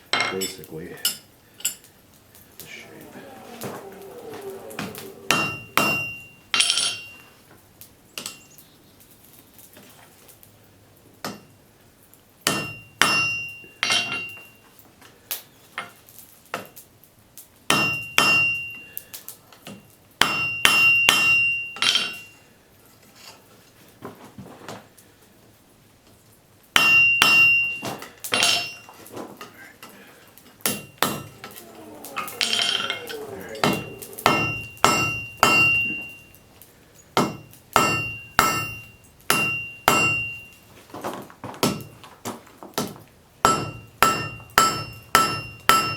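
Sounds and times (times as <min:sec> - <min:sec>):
anvil ringing: 0:03.2 - 0:07.2, 0:30.7 - 0:36.4, 0:37.2 - 0:40.6, 0:43.4 - 0:45.9
hammer striking hot steel on anvil: 0:03.2 - 0:07.2, 0:12.4 - 0:14.5, 0:17.7 - 0:18.9, 0:19.7 - 0:22.3, 0:26.8 - 0:28.9, 0:30.6 - 0:36.4, 0:37.2 - 0:40.6, 0:41.6 - 0:42.0, 0:42.8 - 0:45.9.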